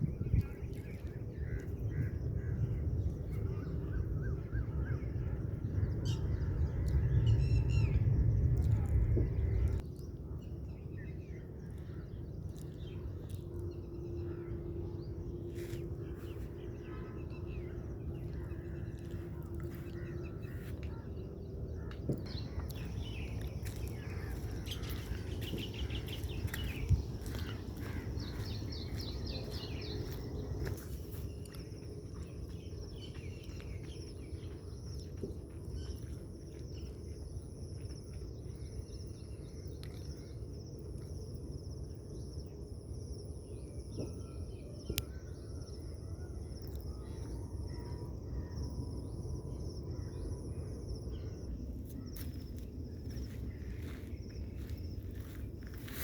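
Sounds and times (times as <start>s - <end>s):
low rumble: 0.0s - 35.5s
birds chirping: 0.0s - 36.1s.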